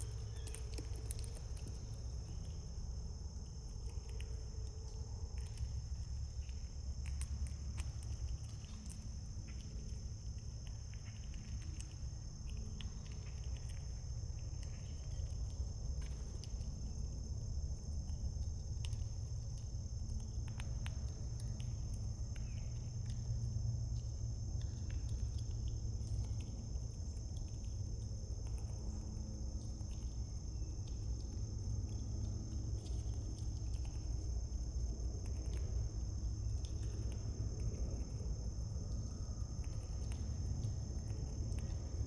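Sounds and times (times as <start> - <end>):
faint clicks and taps: 0.0 - 2.6
crickets chirring: 0.0 - 42.0
low background rumble: 0.0 - 42.0.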